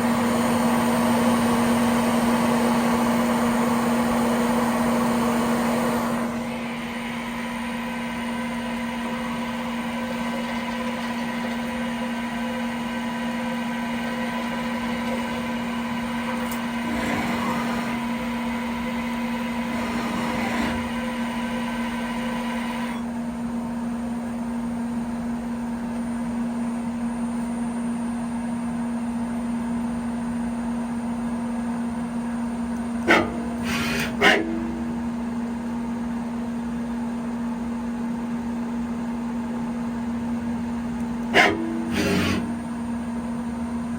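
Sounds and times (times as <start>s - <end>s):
lathe humming: 6.2s - 22.7s, 32.8s - 35.9s, 40.8s - 43.4s.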